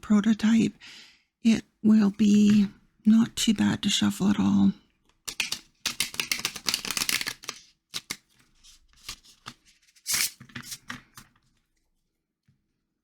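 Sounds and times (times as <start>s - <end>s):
cards being shuffled: 5.1s - 11.4s.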